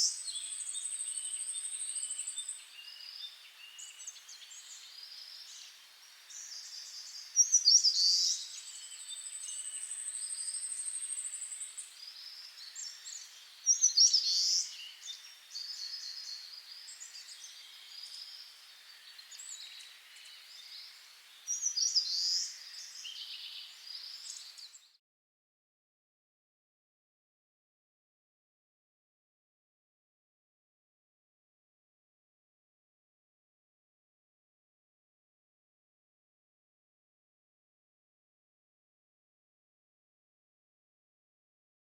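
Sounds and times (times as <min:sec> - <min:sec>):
bird song phrase: 0:00.0 - 0:25.0.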